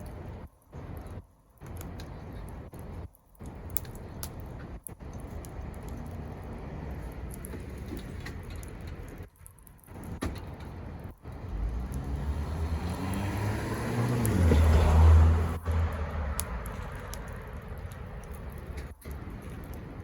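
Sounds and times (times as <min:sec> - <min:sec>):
wood fire crackling: 0:00.0 - 0:20.0
vehicle passing by: 0:11.3 - 0:18.6.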